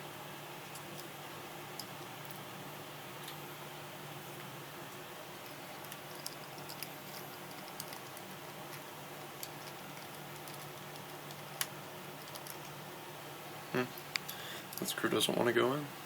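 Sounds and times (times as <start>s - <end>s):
steady low hum: 0.0s - 16.0s
small parts clicking: 5.4s - 12.8s.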